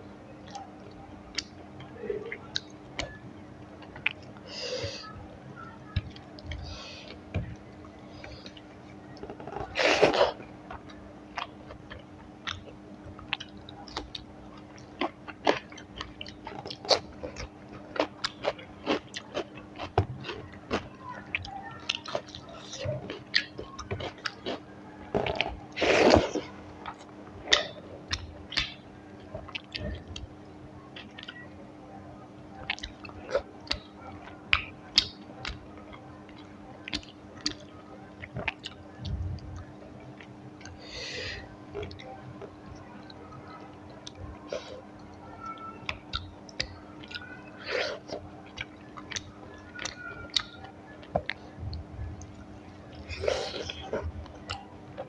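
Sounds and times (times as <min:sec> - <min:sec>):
person chewing food: 0:00.4 - 0:04.9, 0:06.1 - 0:31.4, 0:32.6 - 0:55.0
crunching or slurping bite: 0:09.4 - 0:10.4.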